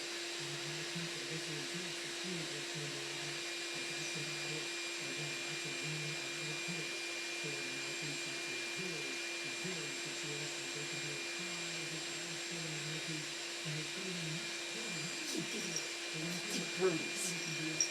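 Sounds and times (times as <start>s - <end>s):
electrical hum: 0.0s - 17.9s
faint low voices: 0.0s - 17.9s.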